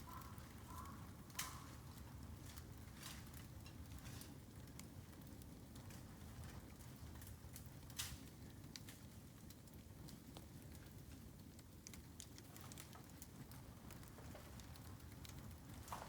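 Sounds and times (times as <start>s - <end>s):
bamboo popping in fire: 0.0s - 16.0s
fire crackling: 0.0s - 16.0s
low fire rumble: 0.0s - 16.0s.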